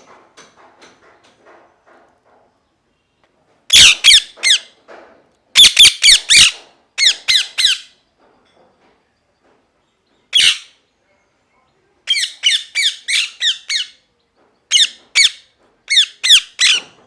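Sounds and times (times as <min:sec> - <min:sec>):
parrot squawking: 0:03.7 - 0:04.7, 0:05.6 - 0:07.9, 0:10.4 - 0:10.7, 0:12.1 - 0:14.0, 0:14.7 - 0:17.0.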